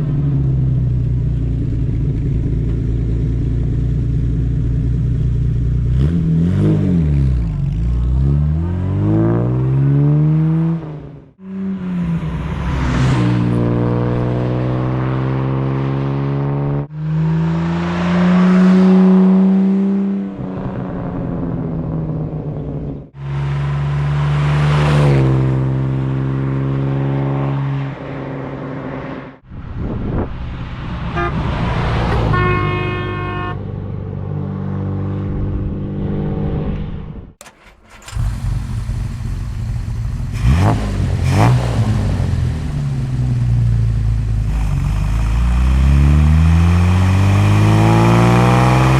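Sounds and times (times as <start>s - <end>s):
car engine revving: 37.4s - 48.9s
car driving past: 44.4s - 48.9s.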